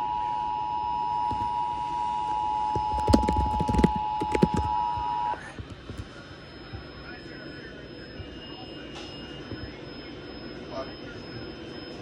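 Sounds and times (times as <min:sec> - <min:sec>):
two-tone alarm signal: 0:00.0 - 0:05.4, 0:07.7 - 0:12.0
loud knocks and clatter: 0:02.8 - 0:06.1.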